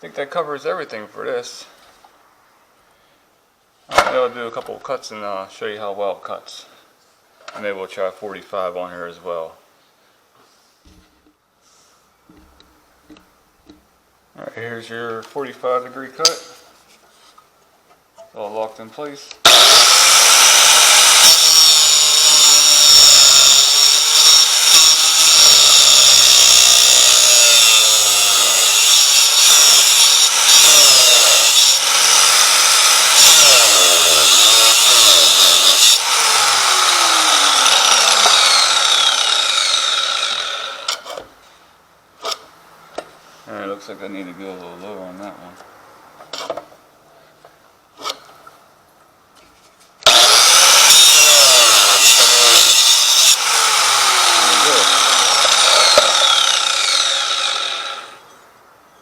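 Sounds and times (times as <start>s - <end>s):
angle grinder cutting metal: 19.5s - 41.2s, 50.0s - 58.3s.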